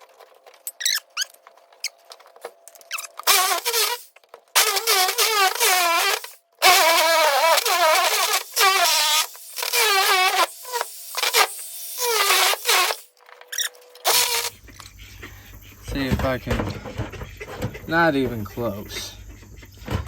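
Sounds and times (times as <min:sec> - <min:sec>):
power saw cutting wood: 0:03.2 - 0:13.1.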